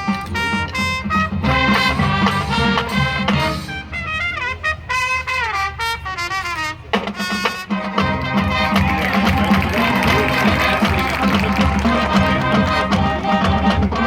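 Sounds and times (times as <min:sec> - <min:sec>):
marching band playing: 0:00.0 - 0:14.0.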